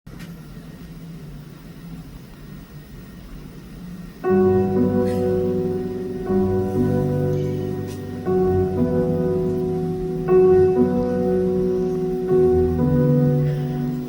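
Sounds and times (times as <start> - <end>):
piano chords: 4.0 - 14.0.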